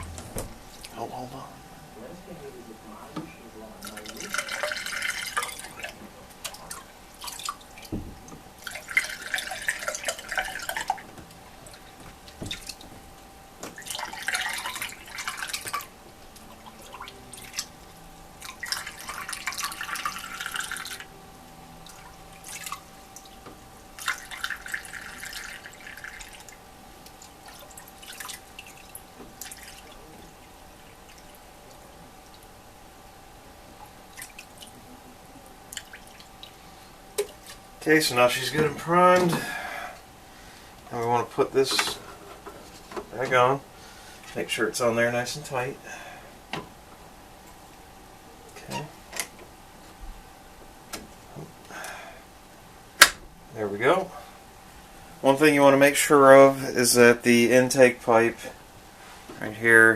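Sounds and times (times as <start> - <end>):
water pouring into filter: 3.8 - 7.9, 8.6 - 11.0, 13.8 - 15.9, 18.4 - 21.1, 24.0 - 26.6, 27.2 - 30.0
water dripping: 21.8 - 32.5, 33.8 - 34.8, 35.7 - 36.6.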